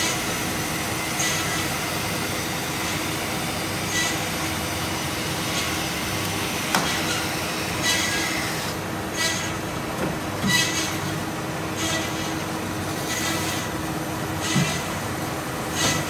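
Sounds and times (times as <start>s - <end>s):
bandsaw running: 2.6s - 9.7s.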